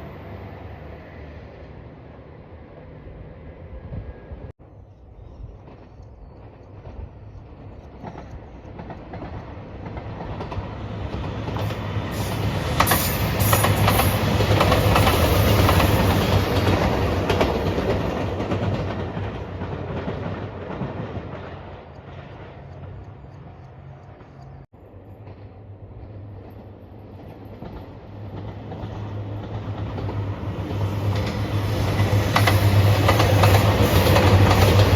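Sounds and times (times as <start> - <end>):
train passing at speed: 0.0 - 34.9.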